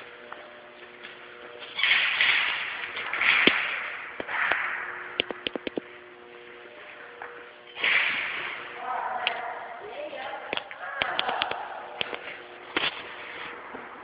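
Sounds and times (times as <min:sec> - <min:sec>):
airsoft gun shots: 0:07.8 - 0:08.6.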